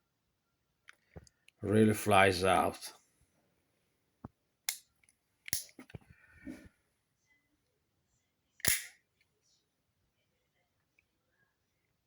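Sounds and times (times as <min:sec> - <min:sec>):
switchblade metallic clicks: 0:08.6 - 0:08.9.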